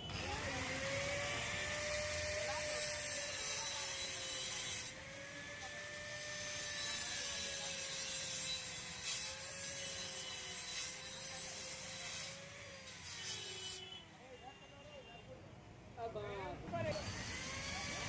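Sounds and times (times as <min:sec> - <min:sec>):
angle grinder on steel: 0:00.0 - 0:14.0, 0:16.8 - 0:18.0.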